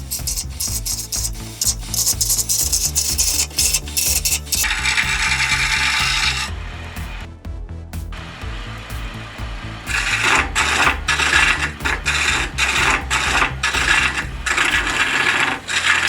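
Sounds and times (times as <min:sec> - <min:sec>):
turning tool hissing scrape: 0:00.0 - 0:06.5, 0:09.9 - 0:16.0
wood lathe spinning: 0:00.0 - 0:06.5, 0:09.8 - 0:16.0.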